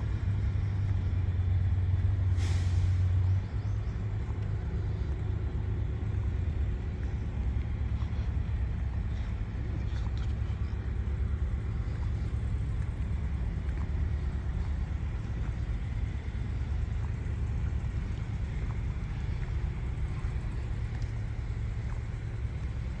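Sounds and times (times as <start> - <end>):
engine running: 0.0 - 23.0.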